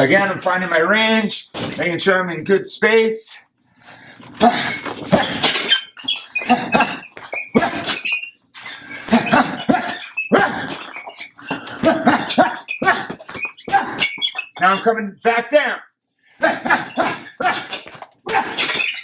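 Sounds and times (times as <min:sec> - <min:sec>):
sharp exhaled breaths: 0:08.6 - 0:12.7.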